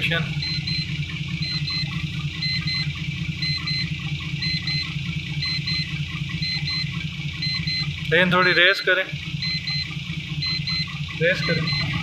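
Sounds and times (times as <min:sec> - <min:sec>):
truck diesel engine idling: 0:00.0 - 0:12.0
high double beep: 0:08.8 - 0:12.0.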